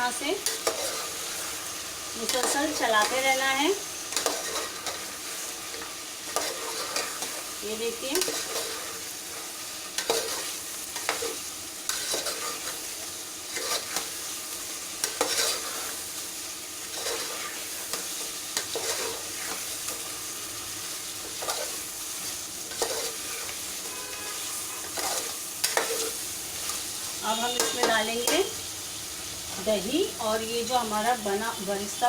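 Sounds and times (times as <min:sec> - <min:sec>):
chicken sizzling in a pan: 0:00.0 - 0:32.0
utensil scraping a pan: 0:00.4 - 0:01.6, 0:04.1 - 0:07.5, 0:08.1 - 0:12.8, 0:13.5 - 0:14.1, 0:15.0 - 0:16.1, 0:16.8 - 0:20.0, 0:21.2 - 0:28.1.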